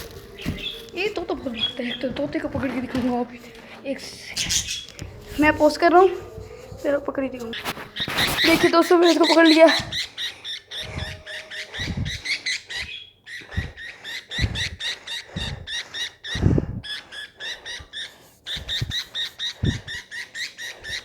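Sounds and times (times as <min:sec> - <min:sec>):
dull low thumps: 0:00.0 - 0:03.7
budgerigars chirping: 0:00.0 - 0:06.5, 0:07.4 - 0:21.0.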